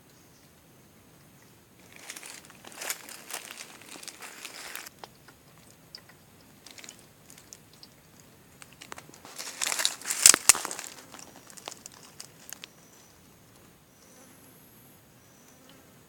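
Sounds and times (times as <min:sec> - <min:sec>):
dry leaves rustling and crackling: 0:01.8 - 0:04.9, 0:06.4 - 0:12.8
twigs snapping: 0:01.8 - 0:12.7.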